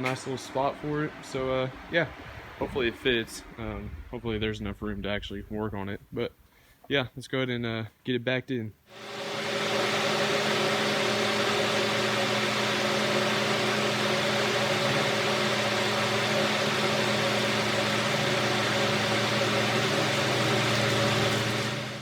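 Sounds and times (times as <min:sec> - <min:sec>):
truck engine running: 0:08.9 - 0:22.0.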